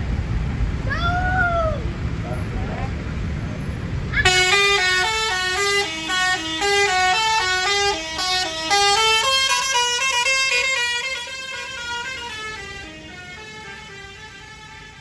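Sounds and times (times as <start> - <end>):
low rumble: 0.0 - 4.7
musical air horn playing a tune: 4.2 - 15.0.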